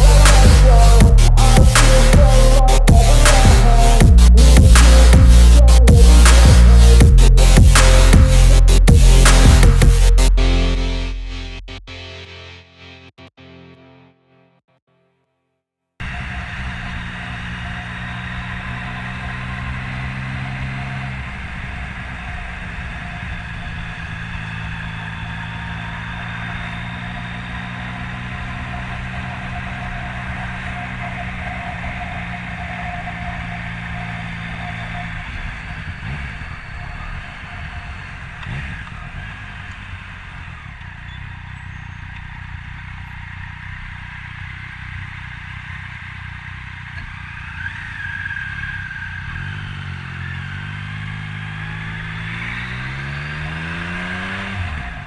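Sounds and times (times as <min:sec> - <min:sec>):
motorcycle engine running: 0:00.0 - 0:10.4, 0:16.1 - 0:54.5
road and wind noise: 0:16.0 - 0:55.0.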